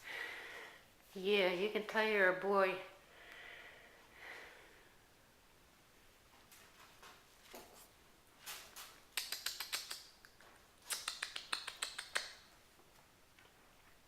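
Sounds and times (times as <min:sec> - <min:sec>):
kittens' claws scrabbling: 0:06.6 - 0:12.6.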